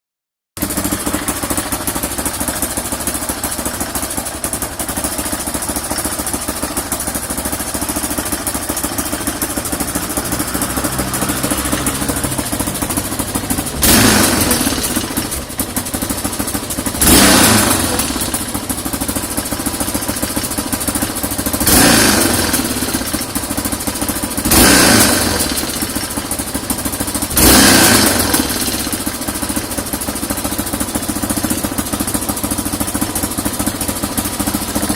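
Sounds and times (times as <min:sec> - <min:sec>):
motorcycle engine idling and revving: 0:00.6 - 0:34.9.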